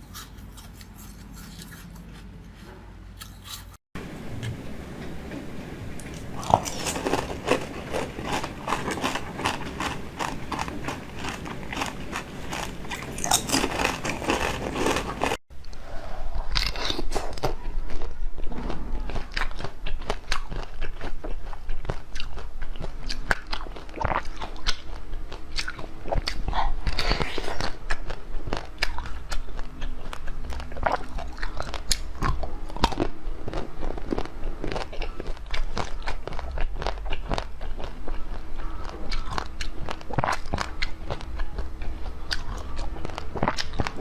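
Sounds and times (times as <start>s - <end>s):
crunching and chewing frozen treats: 0.0s - 2.3s, 6.1s - 44.0s.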